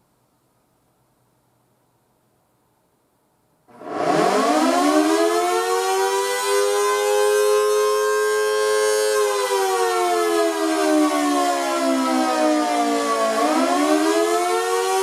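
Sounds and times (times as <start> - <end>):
two-tone siren rising and falling: 3.7 - 15.0.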